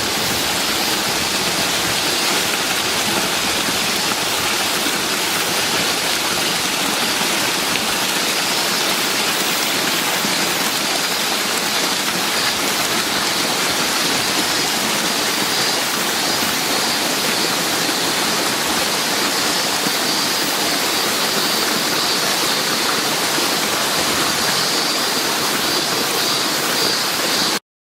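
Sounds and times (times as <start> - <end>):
waterfall rushing: 0.0 - 27.6.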